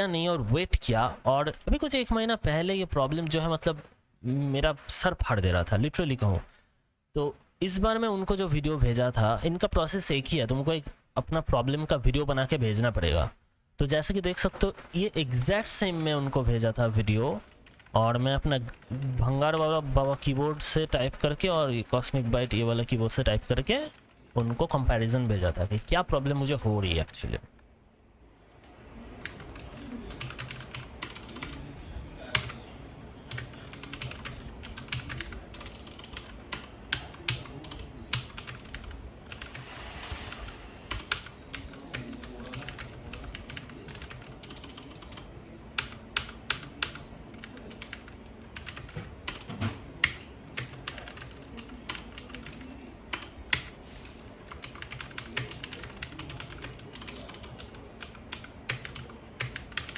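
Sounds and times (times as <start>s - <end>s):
typing on keyboard: 17.4s - 21.2s, 23.8s - 24.8s, 29.2s - 31.6s, 32.3s - 32.6s, 33.3s - 59.9s.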